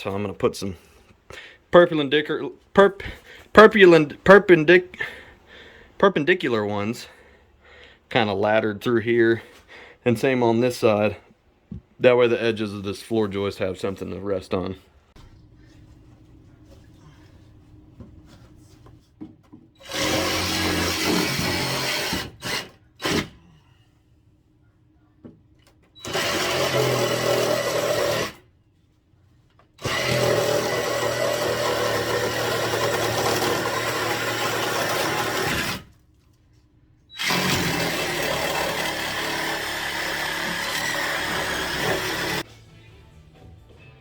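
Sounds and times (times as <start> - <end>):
power tool cutting wood: 19.8 - 23.4, 26.0 - 28.4, 29.8 - 35.9, 37.2 - 42.4.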